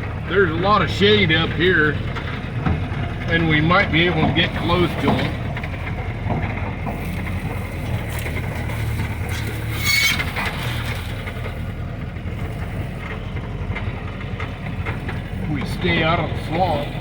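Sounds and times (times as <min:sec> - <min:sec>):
engine running low: 0:00.0 - 0:17.0
vehicle body rattling and creaking: 0:00.0 - 0:17.0.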